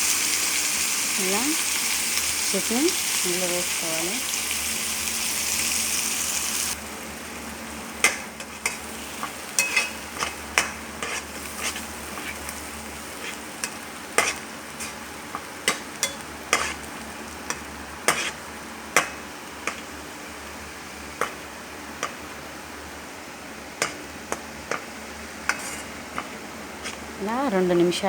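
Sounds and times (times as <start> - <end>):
food sizzling in hot oil: 0.0 - 28.0
spoon stirring in a pan: 8.0 - 16.9, 17.5 - 18.4, 23.8 - 27.1.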